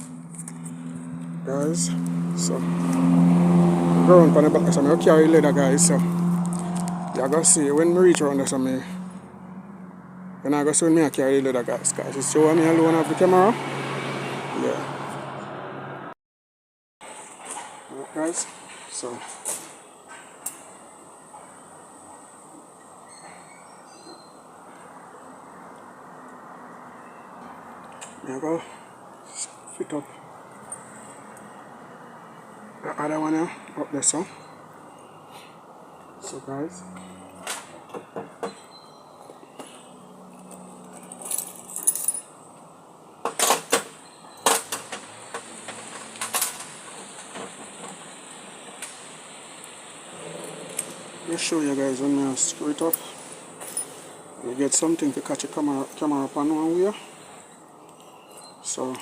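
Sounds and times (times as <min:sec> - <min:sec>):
outdoor background noise: 0:00.0 - 0:16.2, 0:17.0 - 0:59.0
metal hardware jingling: 0:40.3 - 0:42.5, 0:52.8 - 0:54.1.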